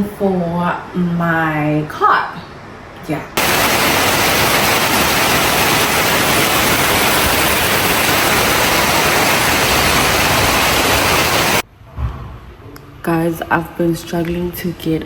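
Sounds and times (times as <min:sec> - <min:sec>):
heavy rain pouring: 0:03.4 - 0:11.6.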